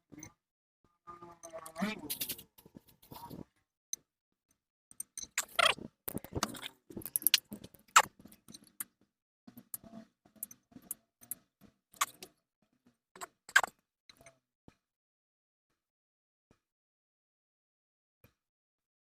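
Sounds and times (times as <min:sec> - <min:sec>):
handling small parts and tools: 0:01.4 - 0:03.4, 0:04.9 - 0:08.8.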